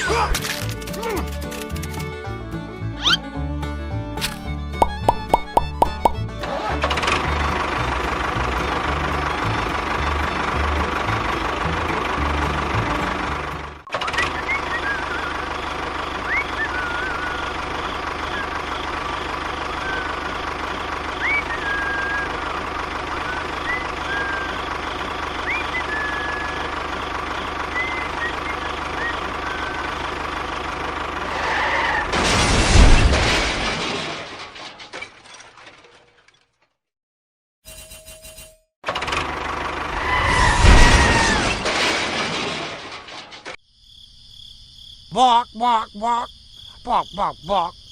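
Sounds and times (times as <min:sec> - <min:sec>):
small engine running: 0:00.1 - 0:03.2, 0:05.6 - 0:31.5, 0:38.8 - 0:40.2
bird chirps: 0:03.0 - 0:03.2.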